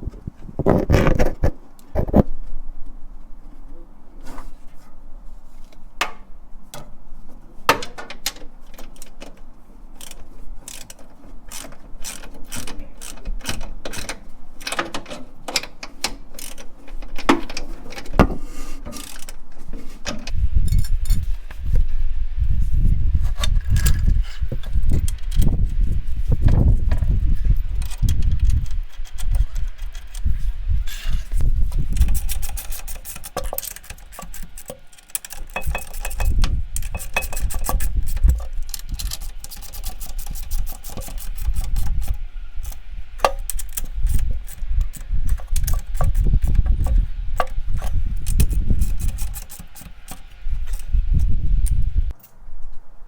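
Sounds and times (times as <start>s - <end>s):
metallic clicks and knocks: 7.7s - 19.4s, 31.3s - 52.8s
low rumbles: 50.3s - 53.0s.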